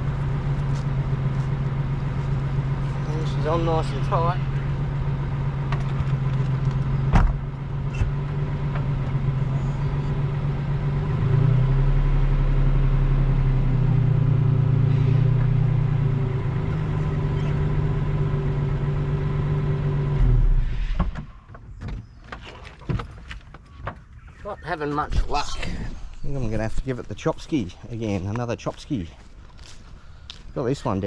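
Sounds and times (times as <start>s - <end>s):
vehicle engine pulling under load: 0.0s - 21.4s.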